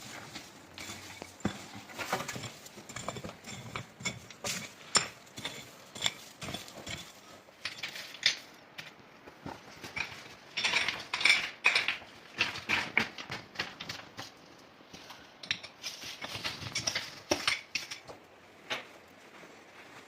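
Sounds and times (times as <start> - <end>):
hard objects knocking and clinking: 0.3 - 9.0, 9.8 - 13.9.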